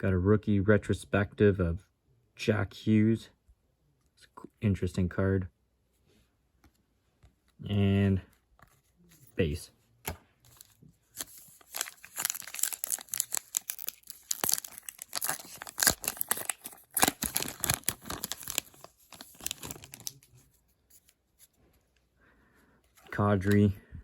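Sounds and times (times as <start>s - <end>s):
foil wrapper tearing and crinkling: 10.5s - 20.3s.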